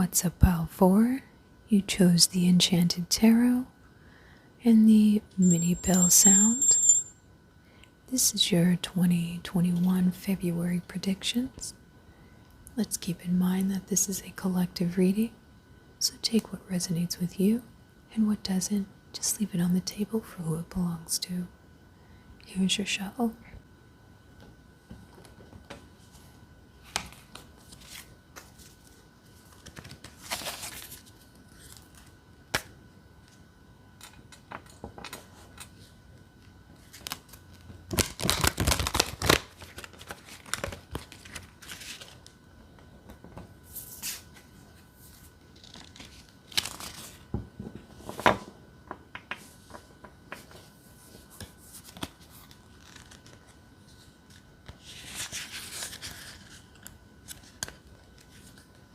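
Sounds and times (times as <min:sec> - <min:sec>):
cards being shuffled: 0:26.8 - 0:32.7, 0:36.8 - 0:42.3, 0:45.1 - 0:48.4, 0:49.7 - 0:58.8.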